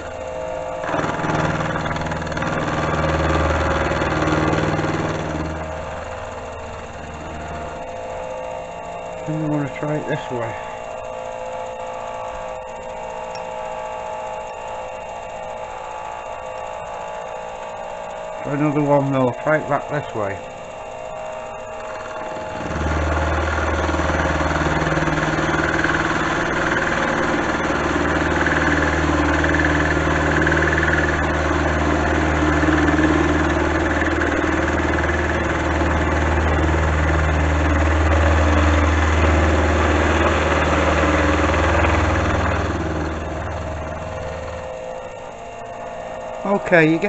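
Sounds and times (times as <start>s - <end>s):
milling machine cutting steel: 0.0s - 10.8s, 21.4s - 45.1s
low motor hum: 0.0s - 47.0s.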